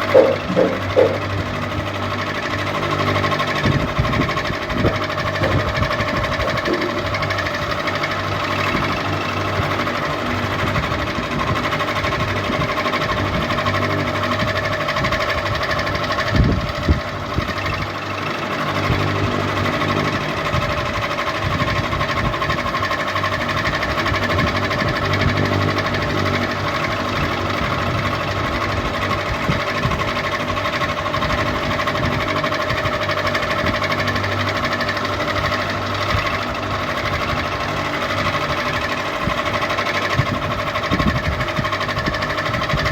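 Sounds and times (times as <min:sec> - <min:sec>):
ceiling fan humming: 0:00.0 - 0:02.1, 0:03.6 - 0:08.8
sharp knocks: 0:00.1 - 0:01.3, 0:04.8 - 0:05.8, 0:06.4 - 0:07.3.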